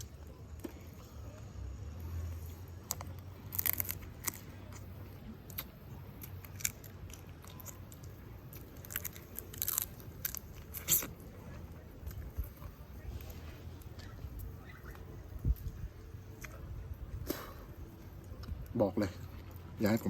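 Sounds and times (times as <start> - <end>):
person chewing crunchy food: 2.1 - 12.4.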